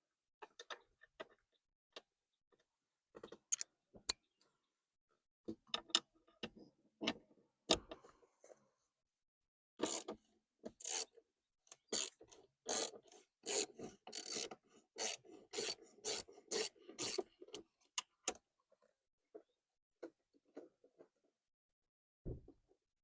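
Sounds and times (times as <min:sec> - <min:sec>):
file rasping on metal: 0:12.7 - 0:17.2.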